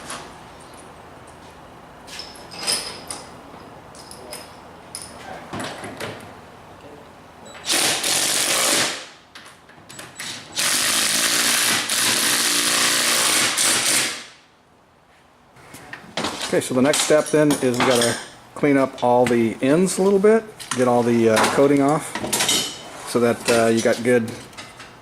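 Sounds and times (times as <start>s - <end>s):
metal parts clinking: 2.2s - 3.3s, 16.9s - 18.3s
handheld power tool running: 10.6s - 14.2s.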